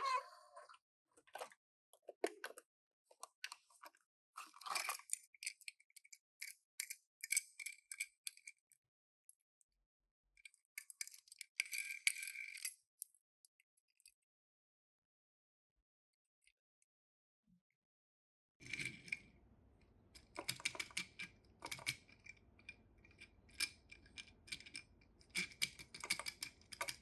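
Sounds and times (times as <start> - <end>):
toy cars and packaging clicking: 1.2 - 9.4, 10.4 - 14.2, 20.2 - 27.0.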